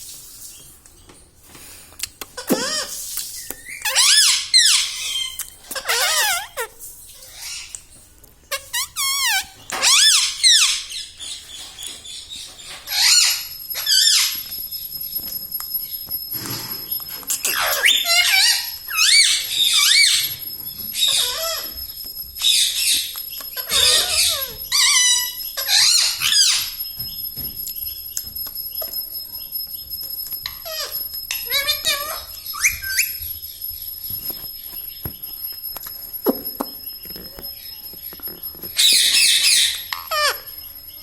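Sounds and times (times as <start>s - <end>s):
parakeet squawking and chattering: 2.4s - 3.0s, 3.6s - 7.9s, 8.5s - 14.5s, 16.9s - 26.9s, 30.5s - 33.3s, 36.2s - 41.0s.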